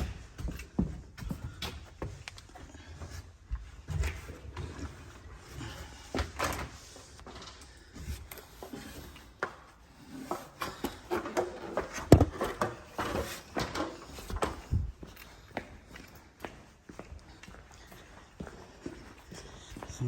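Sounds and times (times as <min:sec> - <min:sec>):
objects knocking and clunking: 0:00.0 - 0:15.0.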